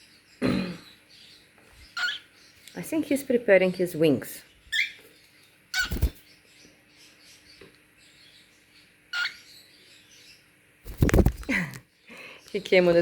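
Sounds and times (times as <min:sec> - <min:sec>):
parrot chirp: 0:01.2 - 0:02.5, 0:04.7 - 0:05.1, 0:05.7 - 0:06.4, 0:09.1 - 0:10.2.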